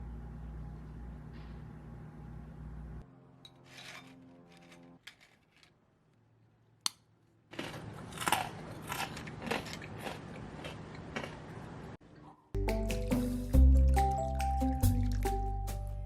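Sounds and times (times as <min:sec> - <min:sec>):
tofu crunching: 0:06.8 - 0:11.4.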